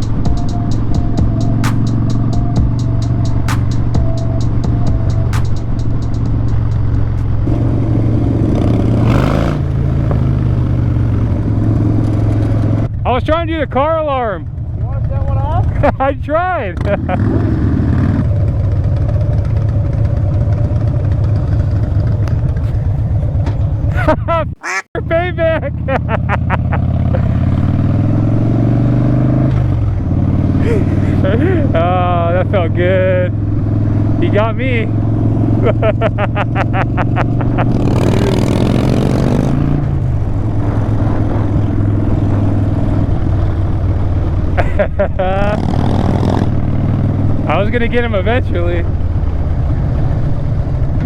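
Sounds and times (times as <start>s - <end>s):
rapid evenly spaced pulses: 0.0s - 7.5s
motorcycle engine running: 0.0s - 13.1s, 14.4s - 16.0s, 16.8s - 23.9s, 26.5s - 51.0s.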